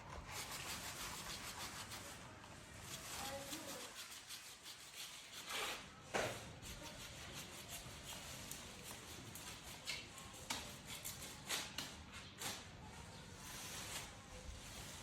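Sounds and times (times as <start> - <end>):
faint knocks and rustles: 5.5 - 6.6.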